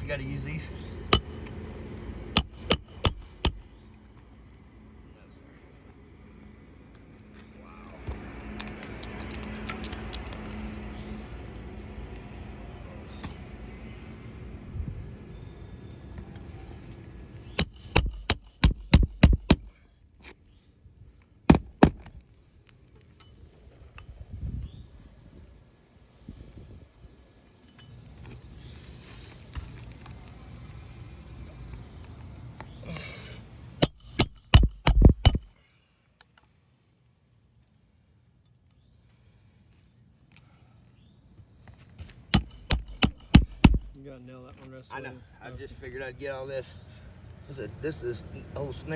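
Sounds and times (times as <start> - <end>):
hammer striking roofing nails: 2.4 - 3.7, 17.6 - 19.8, 21.5 - 22.1, 33.8 - 35.5, 42.3 - 44.0.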